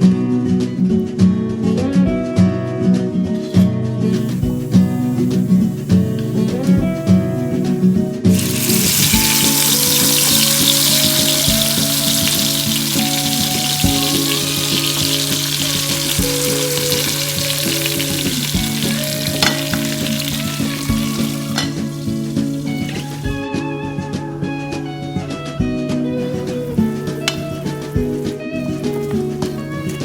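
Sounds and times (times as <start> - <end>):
instrumental guitar music: 0.0 - 30.0
chicken sizzling in hot oil: 3.4 - 23.4, 26.2 - 30.0.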